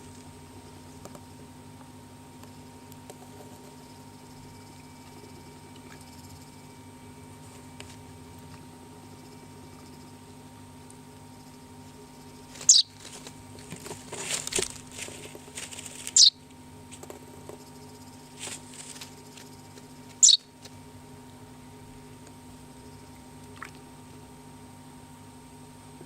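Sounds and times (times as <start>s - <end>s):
wings fluttering: 12.0s - 20.8s
baby bird chirping: 12.6s - 13.0s, 16.1s - 16.4s, 20.2s - 20.5s.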